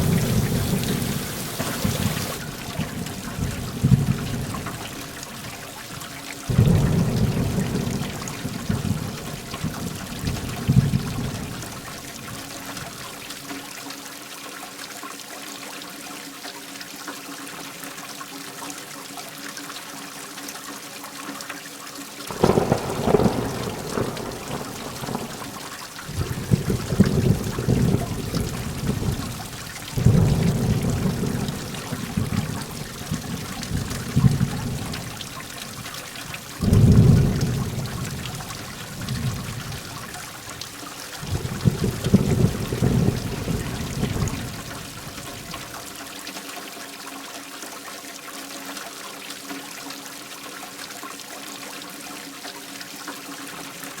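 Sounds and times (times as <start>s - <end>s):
rolling thunder: 0.0s - 5.6s, 6.5s - 12.5s, 22.3s - 45.8s
heavy rain hissing: 0.0s - 13.1s, 22.3s - 46.0s.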